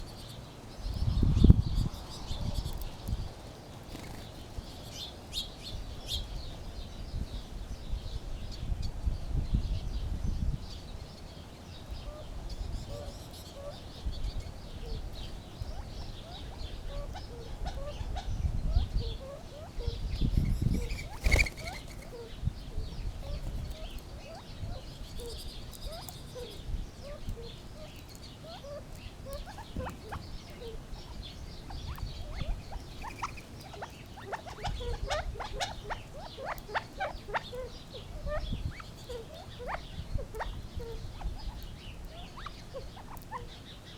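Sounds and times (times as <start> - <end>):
quail clucking and grunting: 12.0 - 43.6.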